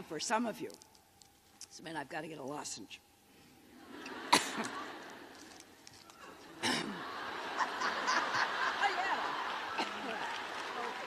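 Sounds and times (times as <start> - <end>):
audience laughing and cheering: 3.7 - 11.0
sharp cough into microphone: 4.3 - 4.7, 6.6 - 7.0.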